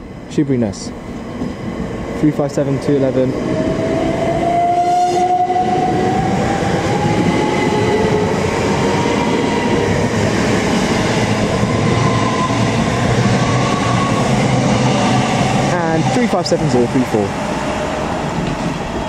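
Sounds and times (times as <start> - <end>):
train running noise: 0.0 - 19.0.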